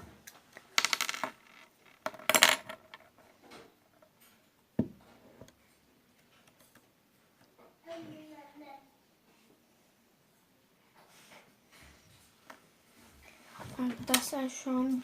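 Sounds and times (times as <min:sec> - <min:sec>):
knock: 0:04.8 - 0:05.0.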